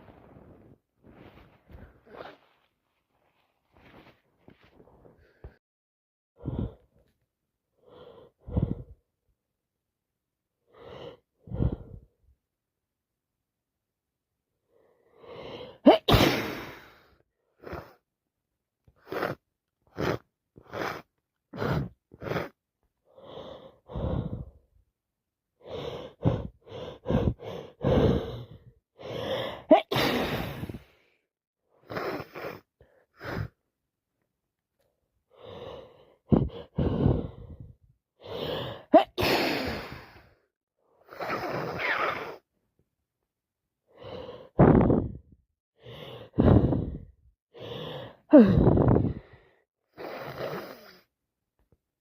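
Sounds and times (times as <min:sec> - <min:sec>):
gasping in-breaths: 0:06.4 - 0:07.0, 0:07.8 - 0:09.0, 0:10.7 - 0:12.1, 0:19.0 - 0:24.7, 0:25.6 - 0:31.2, 0:35.3 - 0:40.4, 0:43.9 - 0:51.1
woman sneezing: 0:15.8 - 0:16.8, 0:29.7 - 0:30.7, 0:38.9 - 0:40.0.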